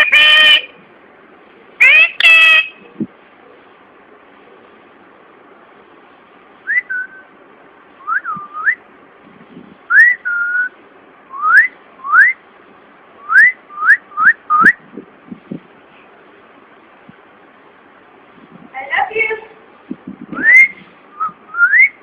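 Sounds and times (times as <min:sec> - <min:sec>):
parrot whistling: 0:01.8 - 0:02.8, 0:06.7 - 0:07.3, 0:09.9 - 0:10.7.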